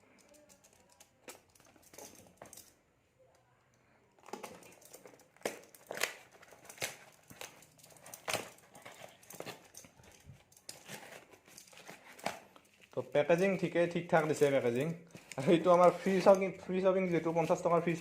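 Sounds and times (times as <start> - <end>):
plastic parcel tearing and crinkling: 4.2 - 18.0.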